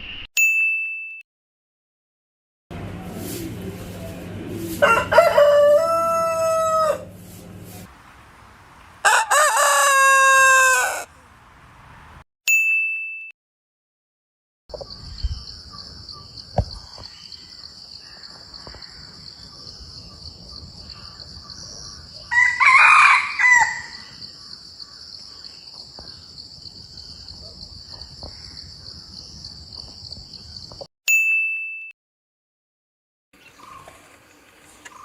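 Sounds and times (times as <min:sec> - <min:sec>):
ding chime: 0:00.4 - 0:01.2, 0:12.5 - 0:13.4, 0:31.1 - 0:32.0
rooster crowing: 0:04.7 - 0:07.2, 0:09.0 - 0:11.2, 0:22.2 - 0:24.2.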